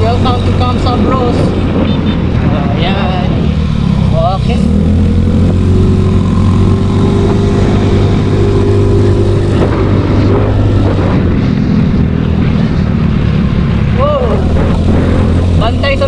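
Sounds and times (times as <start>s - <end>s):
wind rushing over microphone: 0.0s - 16.0s
scooter engine running: 3.6s - 16.0s.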